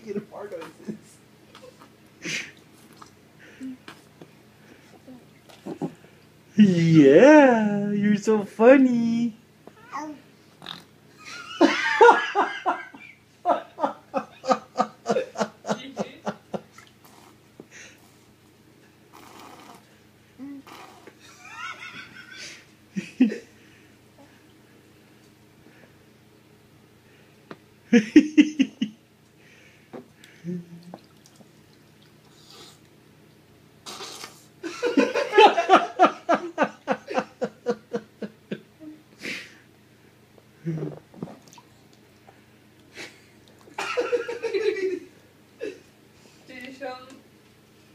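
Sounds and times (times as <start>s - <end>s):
person laughing: 11.2s - 16.4s, 27.9s - 29.0s, 30.4s - 30.9s, 43.8s - 45.8s
person laughing hard: 11.2s - 16.4s, 21.2s - 23.5s, 34.6s - 38.4s.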